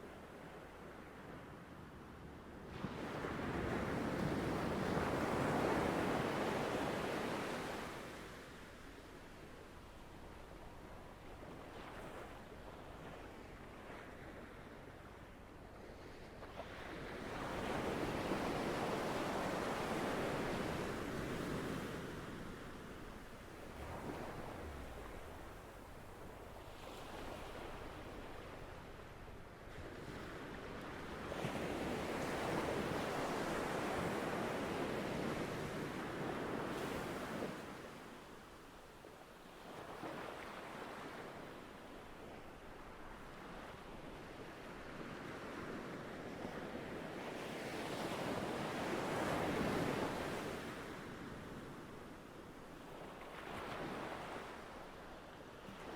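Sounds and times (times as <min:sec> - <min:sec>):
ocean waves breaking on shore: 0:11.6 - 0:38.3, 0:39.4 - 0:55.9.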